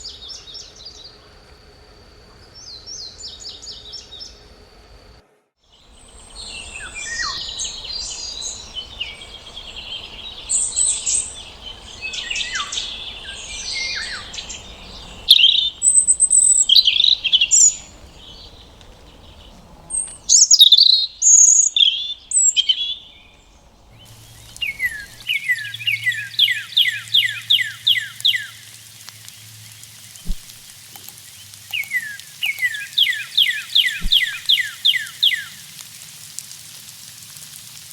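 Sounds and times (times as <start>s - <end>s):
songbirds singing and chirping: 5.7s - 35.9s
bird whistling downward-sliding notes: 6.0s - 18.7s, 20.3s - 28.7s, 30.1s - 30.7s, 31.3s - 35.5s.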